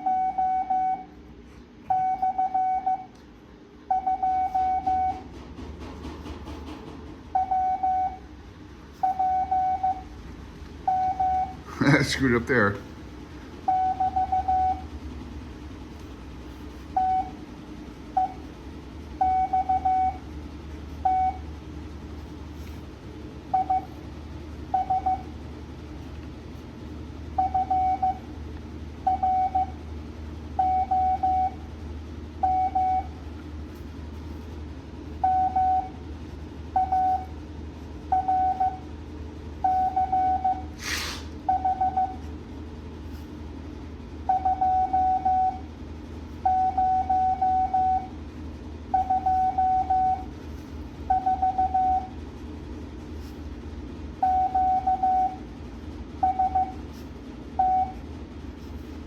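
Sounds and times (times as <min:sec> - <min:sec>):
morse code beeps: 0:00.0 - 0:01.2, 0:01.8 - 0:03.2, 0:03.8 - 0:05.3, 0:07.3 - 0:08.3, 0:09.0 - 0:10.1, 0:10.8 - 0:12.8, 0:13.6 - 0:14.9, 0:16.7 - 0:17.4, 0:18.1 - 0:18.5, 0:19.2 - 0:20.3, 0:20.9 - 0:21.5, 0:23.5 - 0:24.0, 0:24.7 - 0:25.4, 0:27.4 - 0:28.3, 0:29.0 - 0:29.8, 0:30.6 - 0:31.7, 0:32.4 - 0:33.2, 0:35.0 - 0:36.0, 0:36.7 - 0:37.4, 0:38.1 - 0:38.9, 0:39.6 - 0:40.8, 0:41.4 - 0:42.3, 0:44.2 - 0:45.7, 0:46.3 - 0:48.2, 0:48.9 - 0:50.4, 0:51.0 - 0:52.2, 0:54.2 - 0:55.5, 0:56.2 - 0:56.9, 0:57.6 - 0:58.0
steady low hum: 0:00.0 - 0:59.0
brief hissing noise: 0:40.8 - 0:41.3.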